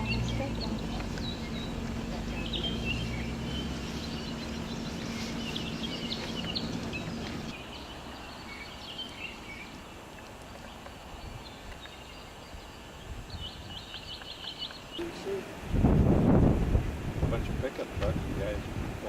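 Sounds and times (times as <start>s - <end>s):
steady low hum: 0.0s - 8.6s
small birds chirping: 0.0s - 15.5s.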